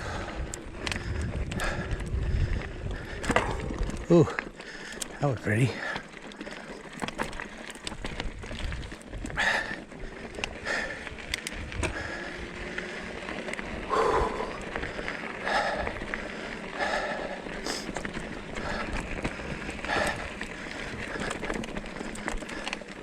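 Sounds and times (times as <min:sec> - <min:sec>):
wind on microphone: 0:00.0 - 0:04.1
bike rattling: 0:00.0 - 0:23.0.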